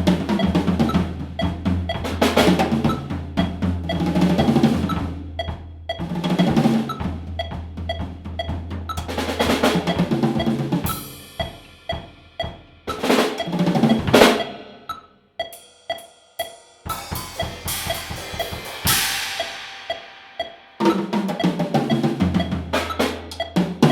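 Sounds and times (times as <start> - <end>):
drum kit playing: 0.0 - 23.9
cymbal crashes: 16.9 - 21.0.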